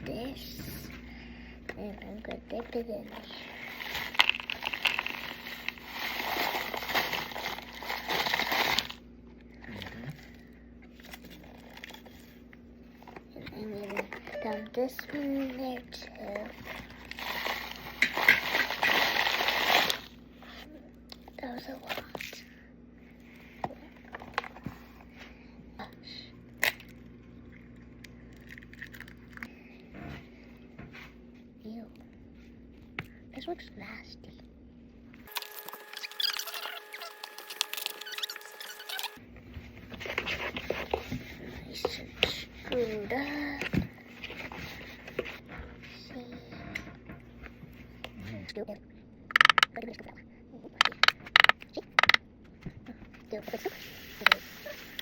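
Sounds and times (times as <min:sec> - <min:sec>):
steady low hum: 0:00.0 - 0:35.8
packaging rustling: 0:03.5 - 0:09.0, 0:16.6 - 0:20.1.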